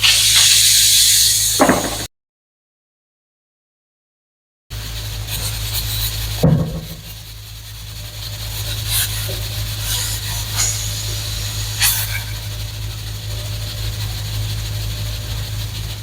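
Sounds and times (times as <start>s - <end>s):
curry hissing in a pan: 0.0s - 2.1s, 4.7s - 16.0s
low hum: 5.2s - 16.0s.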